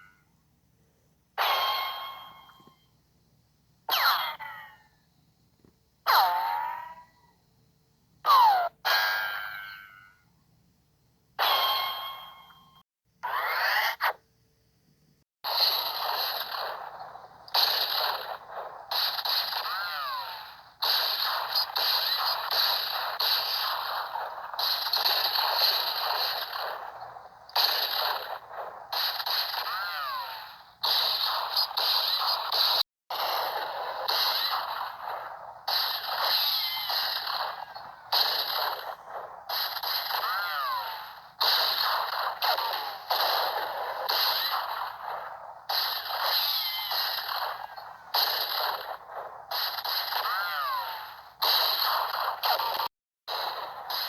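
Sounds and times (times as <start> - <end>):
reverberant gunshots: 15.4 - 54.0
ricochet whine: 15.4 - 54.0.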